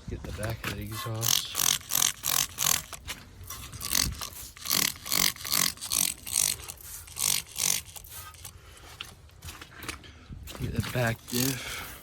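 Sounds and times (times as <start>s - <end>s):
spray bottle hissing sprays: 6.6s - 8.5s.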